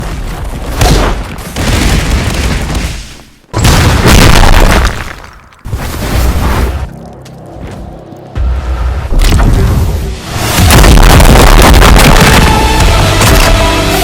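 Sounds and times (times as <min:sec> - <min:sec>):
explosion blasts with rumble: 0:03.6 - 0:05.1, 0:08.9 - 0:13.5.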